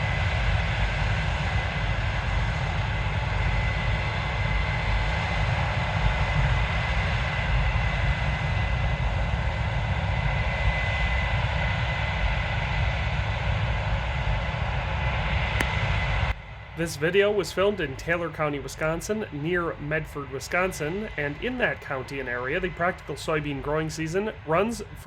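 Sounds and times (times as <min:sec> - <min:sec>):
steady high whine: 0:00.0 - 0:25.0
deep machine rumble: 0:01.4 - 0:25.0.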